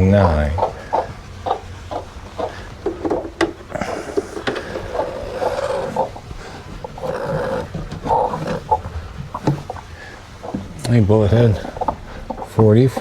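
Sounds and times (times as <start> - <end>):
sharp knocks: 0.0 - 6.2
chickens calling: 0.0 - 13.0.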